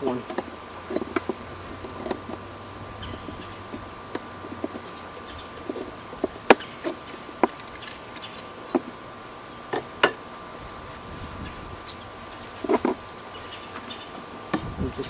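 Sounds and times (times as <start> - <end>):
wooden beehive boxes knocking: 0.0 - 9.0.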